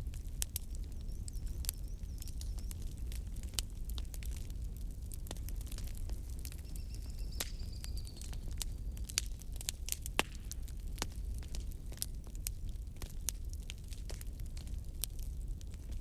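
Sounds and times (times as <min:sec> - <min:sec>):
fire popping and snapping: 0:00.0 - 0:16.0
flames rumbling: 0:00.0 - 0:16.0
wood fire crackling: 0:00.0 - 0:16.0
faint thin whistle: 0:06.6 - 0:08.4.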